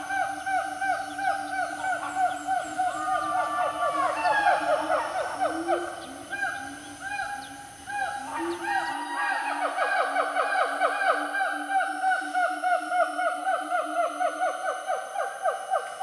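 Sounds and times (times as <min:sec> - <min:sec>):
animals calling rapid notes: 0:00.0 - 0:09.0
gliding animal call: 0:00.0 - 0:14.1.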